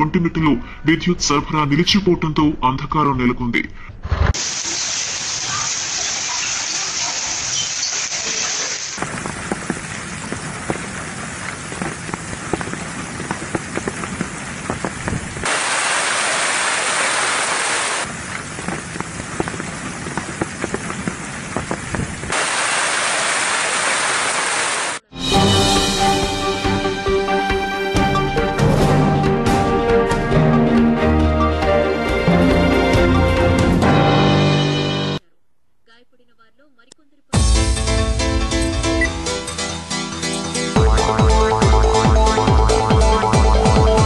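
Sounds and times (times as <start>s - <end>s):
heavy rain pouring: 4.4s - 30.1s.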